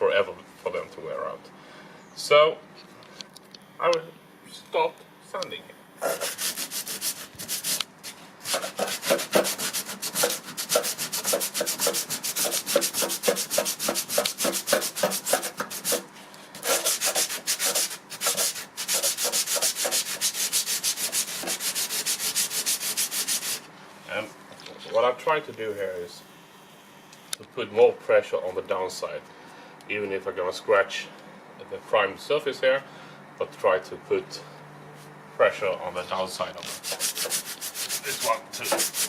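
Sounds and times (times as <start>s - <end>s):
sandpaper rubbing on filler: 6.0s - 23.7s, 36.7s - 39.0s.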